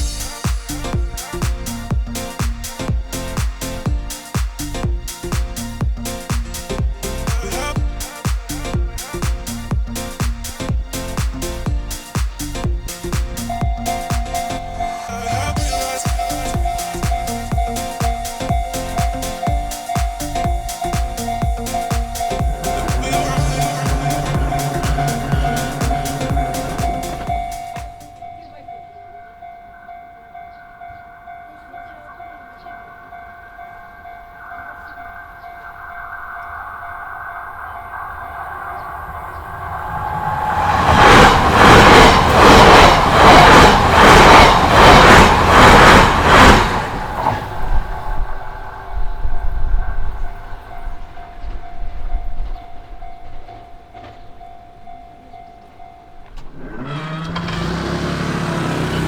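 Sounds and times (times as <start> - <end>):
low rumble: 0.0 - 28.9, 37.9 - 52.5
approaching train: 0.0 - 59.0
level crossing warning bell: 13.4 - 39.6, 49.4 - 59.0.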